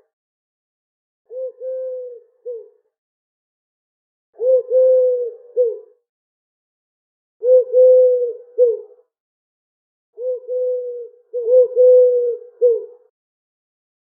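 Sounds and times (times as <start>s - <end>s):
pigeon cooing: 1.3s - 2.8s, 4.4s - 6.0s, 7.4s - 9.0s, 10.2s - 13.1s.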